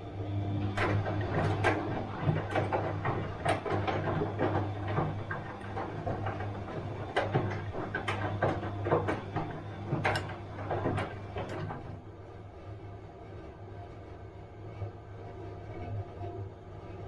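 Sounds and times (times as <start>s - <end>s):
washing machine humming: 0.0s - 17.0s
drum clicks and knocks: 0.7s - 12.0s.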